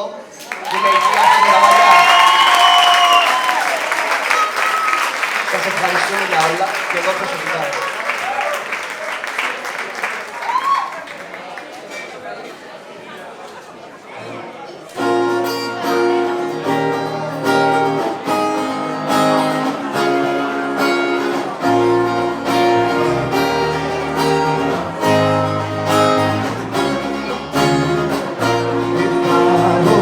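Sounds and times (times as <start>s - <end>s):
acoustic guitars playing: 15.0s - 30.0s
bass line: 21.0s - 30.0s.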